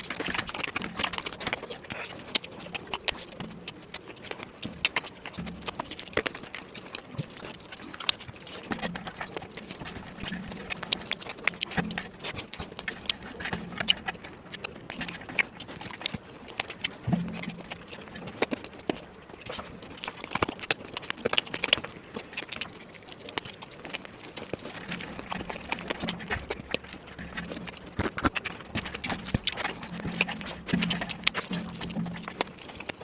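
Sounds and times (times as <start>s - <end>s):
chewing mouth clicks and smacks: 0.0s - 33.0s.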